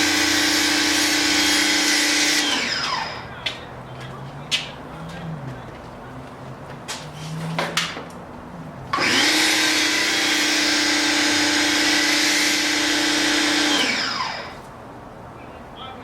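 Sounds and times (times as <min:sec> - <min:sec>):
pressure washer running: 0:00.0 - 0:03.3, 0:08.9 - 0:14.6.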